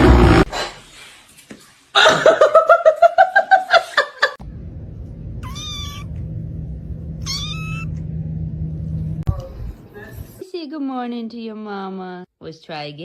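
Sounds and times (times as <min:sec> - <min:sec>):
steady low hum: 0:04.4 - 0:10.4
cat meowing: 0:05.4 - 0:06.2, 0:07.2 - 0:08.0
cat pulsing call: 0:05.4 - 0:06.2, 0:07.2 - 0:08.0.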